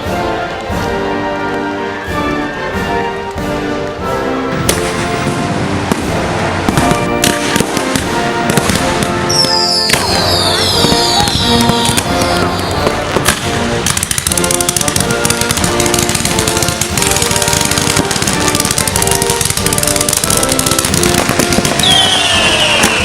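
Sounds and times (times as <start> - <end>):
music: 0.0 - 23.0
firework shells bursting: 4.6 - 23.0
high falling whistles: 9.3 - 11.8, 21.8 - 23.0.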